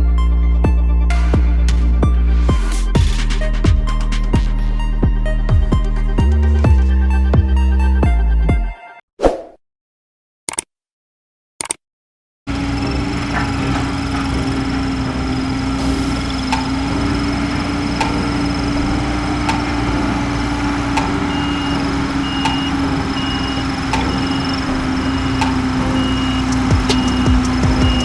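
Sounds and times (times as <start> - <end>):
diesel engine running: 12.5 - 28.0
engine ticking: 12.5 - 28.0
reversing alarm beeps: 21.0 - 28.0.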